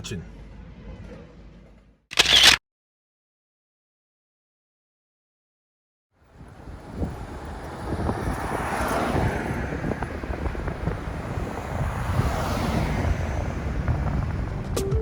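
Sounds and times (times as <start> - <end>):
wind rushing over microphone: 6.2 - 15.0.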